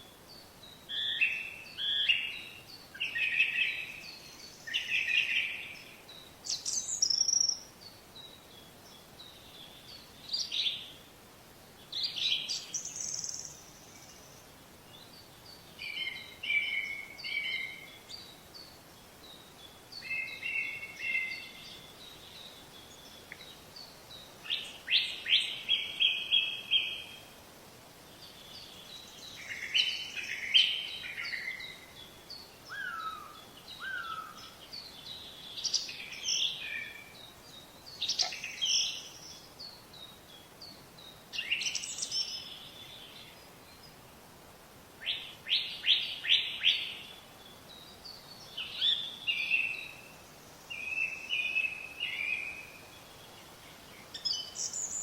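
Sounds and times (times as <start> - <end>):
faint outdoor background: 0.0 - 55.0
songbirds chirping and singing: 0.2 - 11.0, 28.1 - 44.2, 45.1 - 55.0.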